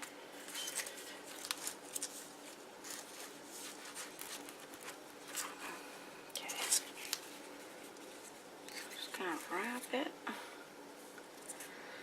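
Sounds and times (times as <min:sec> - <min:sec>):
faint steady hum: 0:00.0 - 0:12.0
rustling and scratching of cotton wool: 0:00.4 - 0:05.6.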